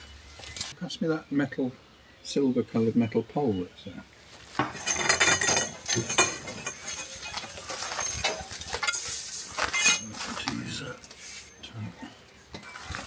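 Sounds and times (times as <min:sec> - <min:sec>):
metal poles clanking and scraping: 0:04.4 - 0:11.6, 0:12.5 - 0:13.0.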